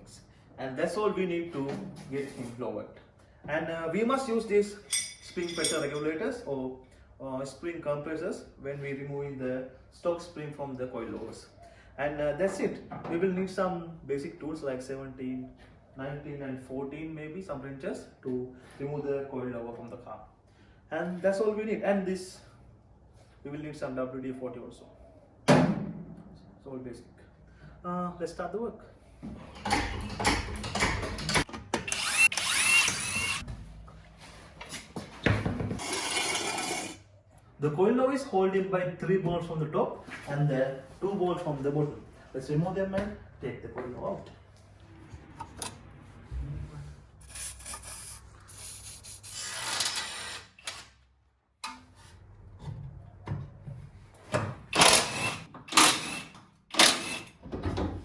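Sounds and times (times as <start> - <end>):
tools and metal clattering: 4.7 - 6.2, 29.2 - 33.5, 51.6 - 52.1, 54.3 - 58.0
power tool whirring: 30.7 - 33.4, 35.8 - 37.0, 49.4 - 50.9, 54.8 - 57.4
hand tools rasping on metal: 35.8 - 37.0.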